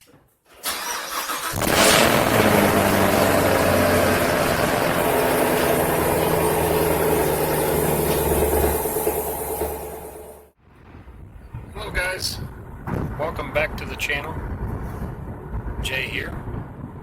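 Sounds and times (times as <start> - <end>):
car engine starting and idling: 0.6 - 10.6.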